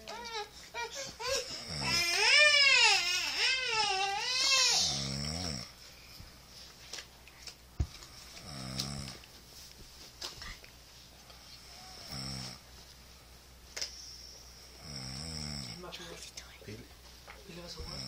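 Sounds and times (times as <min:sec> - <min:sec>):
person snoring: 0:01.4 - 0:02.4, 0:04.4 - 0:05.7, 0:08.4 - 0:09.2, 0:11.6 - 0:12.6, 0:14.8 - 0:15.9.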